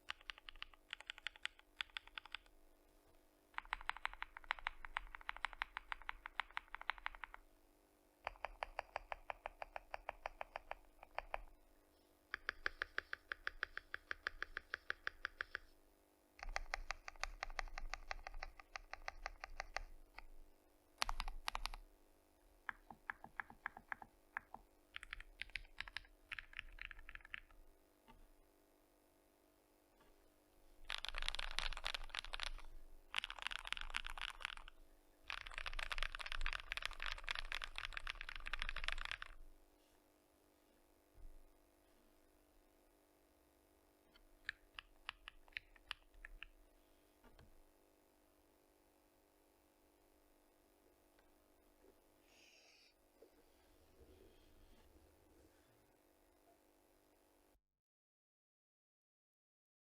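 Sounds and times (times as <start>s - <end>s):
fast typing on mechanical keyboard: 0.0s - 2.5s, 3.6s - 7.4s, 8.3s - 11.5s, 12.3s - 15.6s, 16.4s - 19.9s, 21.0s - 21.8s, 22.7s - 27.5s, 30.8s - 34.7s, 35.3s - 39.4s, 44.5s - 46.5s.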